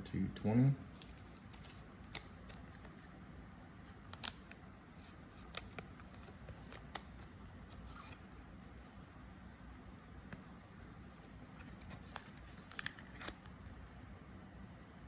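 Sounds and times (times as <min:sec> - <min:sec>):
cards clicking: 0:01.0 - 0:03.1, 0:03.9 - 0:08.3, 0:11.1 - 0:13.6
cards sliding: 0:01.0 - 0:03.1, 0:03.8 - 0:08.6, 0:10.9 - 0:13.6.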